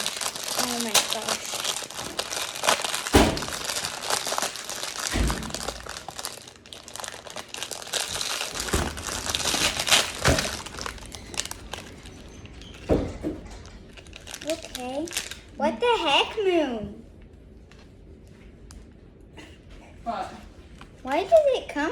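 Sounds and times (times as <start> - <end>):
plastic packaging crinkling: 0.0 - 15.6.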